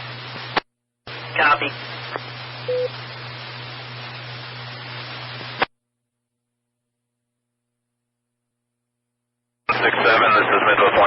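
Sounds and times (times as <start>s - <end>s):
radio static hiss: 0.0s - 5.7s, 9.7s - 11.0s
short beep: 2.7s - 2.9s.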